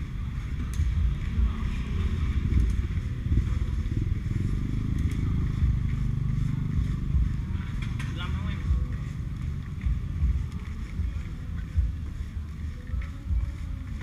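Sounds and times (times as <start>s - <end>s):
motorbike engine rumble: 0.0s - 14.0s.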